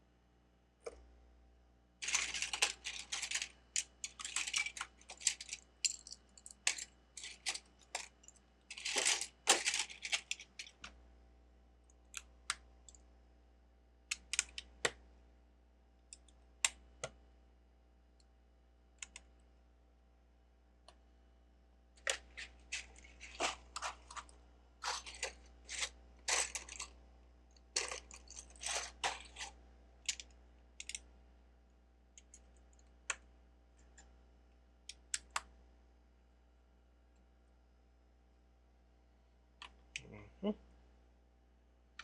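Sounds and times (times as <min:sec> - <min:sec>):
plastic bricks clattering: 0:02.0 - 0:08.1, 0:08.7 - 0:10.8, 0:22.8 - 0:26.9, 0:27.8 - 0:29.5.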